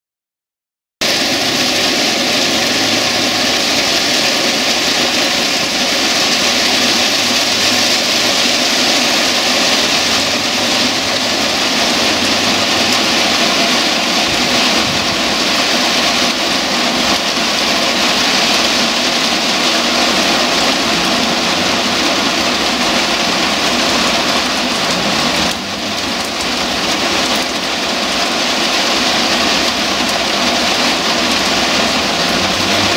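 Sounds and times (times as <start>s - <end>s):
heavy rain falling: 1.0s - 32.9s.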